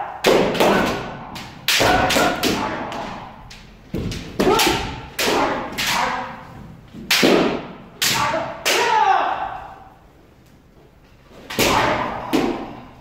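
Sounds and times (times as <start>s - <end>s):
people shouting: 0.0s - 3.2s, 4.4s - 6.4s, 8.0s - 10.0s, 11.6s - 12.9s.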